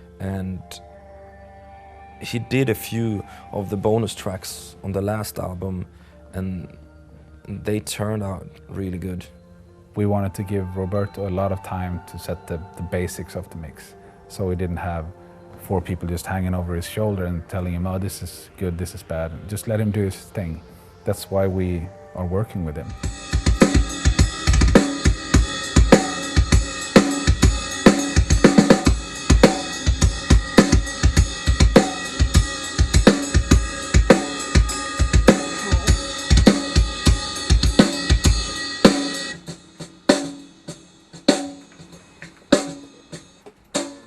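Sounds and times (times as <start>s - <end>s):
drum kit playing beat: 22.9s - 44.0s
cymbal and hi-hat wash: 23.0s - 43.3s.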